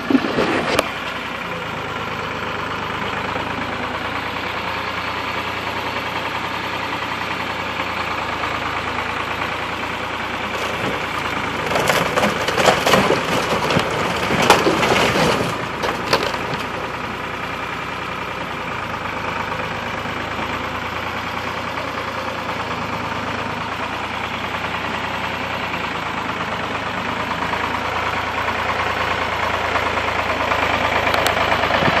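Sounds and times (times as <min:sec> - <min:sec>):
engine running: 0:00.0 - 0:32.0
wood and panels splintering: 0:10.5 - 0:16.8.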